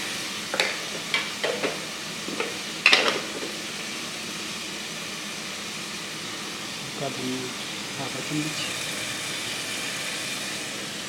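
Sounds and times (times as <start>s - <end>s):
food sizzling: 0.0s - 11.0s.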